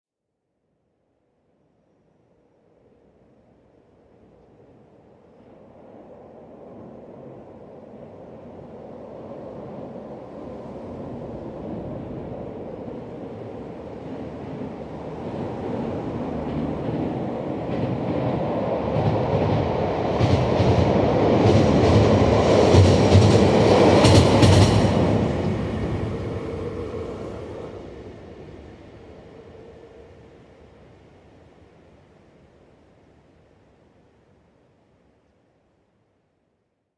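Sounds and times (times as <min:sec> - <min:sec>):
train rumble: 0:05.4 - 0:31.3.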